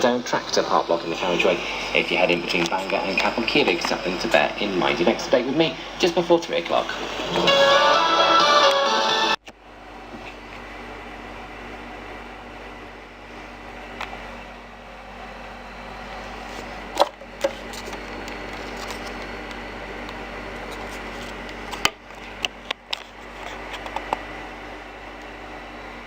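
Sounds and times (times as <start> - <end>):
radio static hiss: 0.0 - 9.4
faint hum: 0.0 - 26.0.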